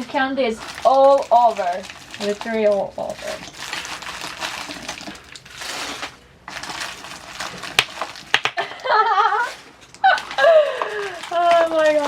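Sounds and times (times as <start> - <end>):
candies rustling and scraping: 0.0 - 12.0
candies clicking together: 7.5 - 12.0.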